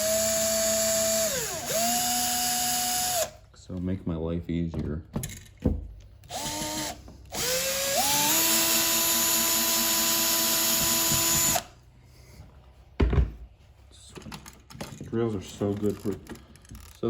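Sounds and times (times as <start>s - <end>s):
power drill backing out screws: 6.3s - 11.7s
thump: 13.0s - 13.4s.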